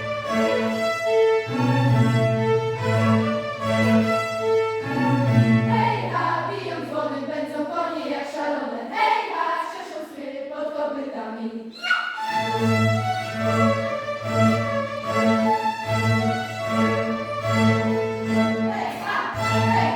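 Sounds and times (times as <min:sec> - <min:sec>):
string ensemble playing: 0:00.0 - 0:07.2, 0:12.2 - 0:19.9.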